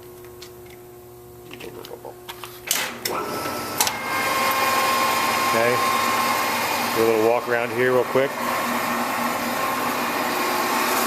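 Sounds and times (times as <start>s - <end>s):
lathe running with whine: 3.1s - 11.0s.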